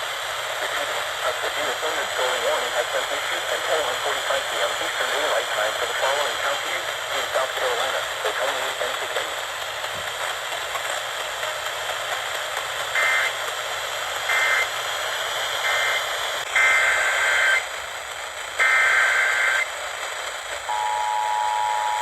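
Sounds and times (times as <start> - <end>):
radio hiss: 0.0 - 22.0
two-tone attention signal: 20.7 - 22.0.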